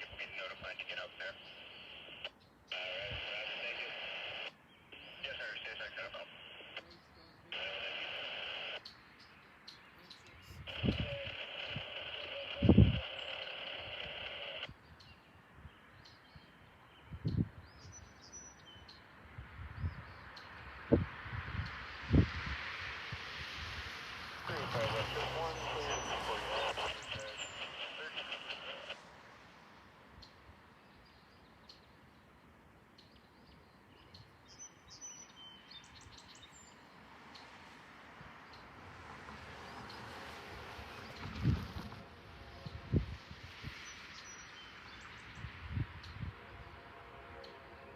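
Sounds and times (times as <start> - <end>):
radio hiss: 0.0 - 8.8, 10.0 - 14.8, 21.7 - 29.8
faint birds chirping: 0.0 - 47.9.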